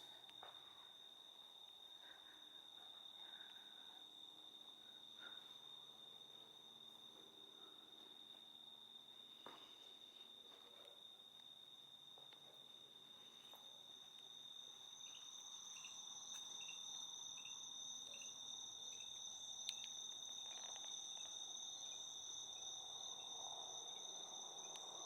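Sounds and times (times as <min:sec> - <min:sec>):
insects trilling: 0:00.0 - 0:25.0
short insect chirps: 0:14.2 - 0:25.0.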